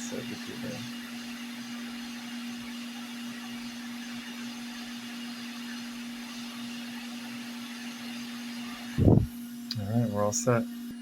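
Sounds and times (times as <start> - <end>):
hot-air station blowing: 0.0 - 11.0.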